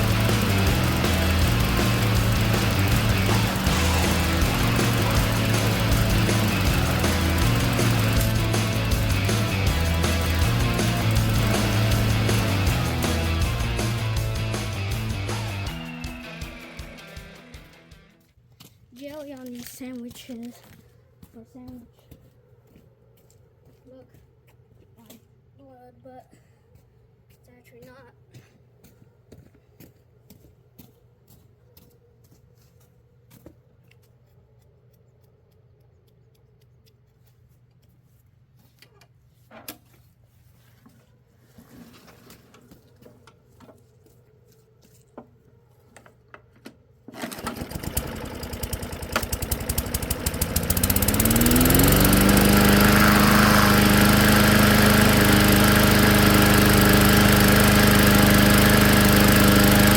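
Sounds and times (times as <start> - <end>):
lawnmower engine running: 0.0 - 18.1, 47.1 - 59.9.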